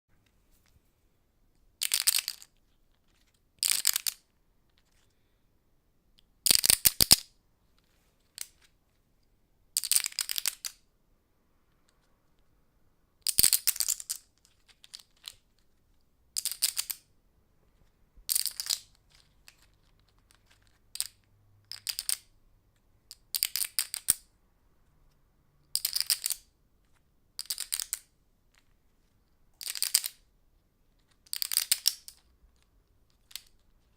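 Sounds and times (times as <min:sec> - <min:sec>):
poker chips clacking: 0:01.8 - 0:05.0, 0:06.5 - 0:07.2, 0:08.2 - 0:08.7, 0:09.8 - 0:10.8, 0:13.2 - 0:15.6, 0:16.4 - 0:17.0, 0:18.3 - 0:22.3, 0:23.1 - 0:24.2, 0:25.7 - 0:26.5, 0:27.4 - 0:28.7, 0:29.6 - 0:30.2, 0:31.0 - 0:33.9.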